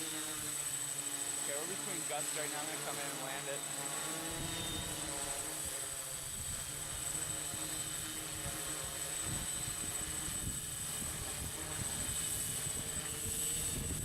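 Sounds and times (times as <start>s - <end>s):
drone motors humming: 0.0s - 14.0s
wind buffeting microphone: 6.2s - 7.6s, 8.3s - 14.0s.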